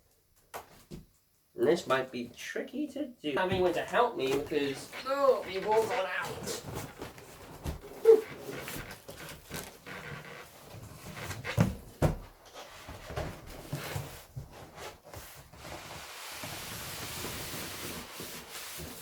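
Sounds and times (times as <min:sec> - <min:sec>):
cardboard scraping and rubbing: 0:03.6 - 0:19.0.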